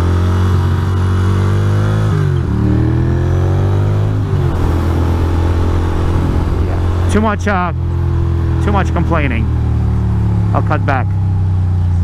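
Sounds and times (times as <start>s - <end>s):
motorcycle engine accelerating: 0.0s - 12.0s.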